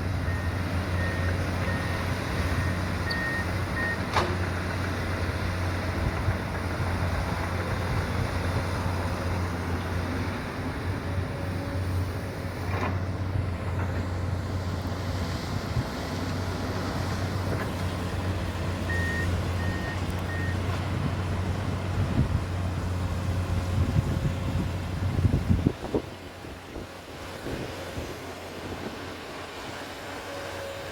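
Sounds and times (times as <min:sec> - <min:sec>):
diesel engine running: 0:00.0 - 0:30.9
high warning beeps: 0:18.9 - 0:20.6.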